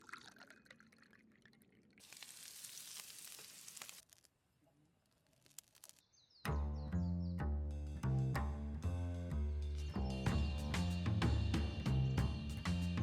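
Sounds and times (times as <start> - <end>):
soft hiss with crackles: 2.0 - 6.1.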